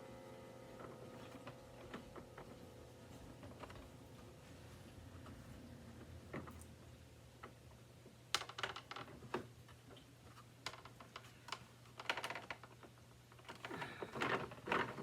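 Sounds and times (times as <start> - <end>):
plastic parts clicking and clattering: 10.3 - 15.0.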